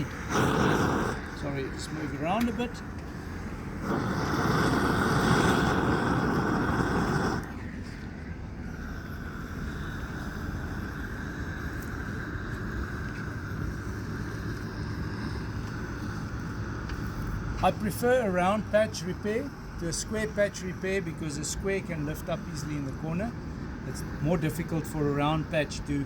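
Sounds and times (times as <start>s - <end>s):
gas torch flame hissing: 0.0s - 26.0s.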